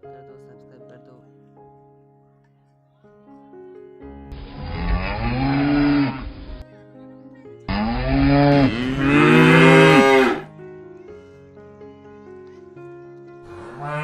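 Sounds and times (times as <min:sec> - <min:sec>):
background music: 0:00.0 - 0:14.0
cow mooing: 0:04.5 - 0:06.4, 0:07.7 - 0:10.5, 0:13.5 - 0:14.0.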